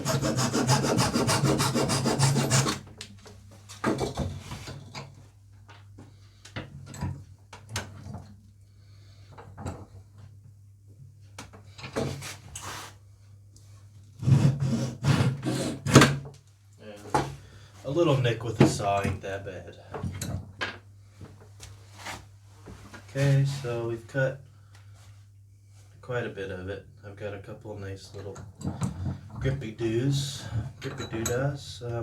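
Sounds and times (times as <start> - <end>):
hand saw cutting wood: 0.0 - 2.9, 14.2 - 16.2.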